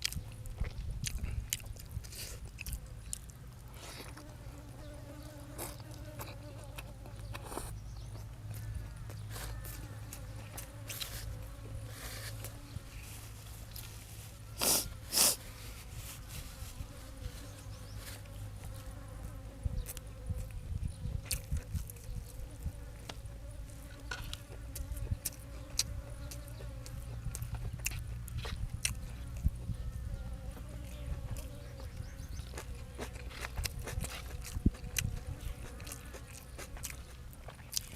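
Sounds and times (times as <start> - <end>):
chewing clicks: 0.0 - 3.4, 24.3 - 29.6, 32.4 - 37.9.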